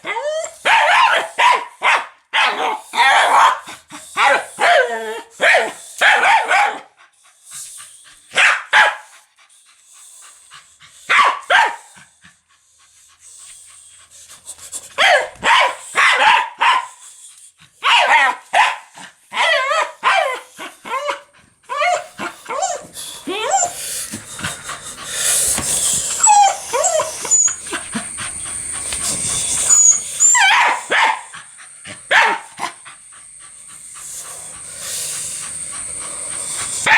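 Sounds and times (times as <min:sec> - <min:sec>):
dog barking loudly: 0:00.6 - 0:06.9, 0:08.3 - 0:09.1, 0:11.1 - 0:11.9, 0:15.0 - 0:17.0, 0:17.8 - 0:22.8, 0:30.2 - 0:31.3, 0:32.0 - 0:32.8.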